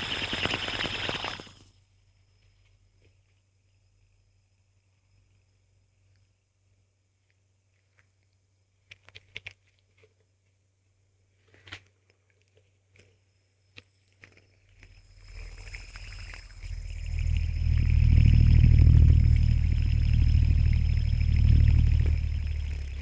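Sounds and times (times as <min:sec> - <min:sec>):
hand spinner whirring: 0:00.0 - 0:01.7, 0:15.1 - 0:23.0.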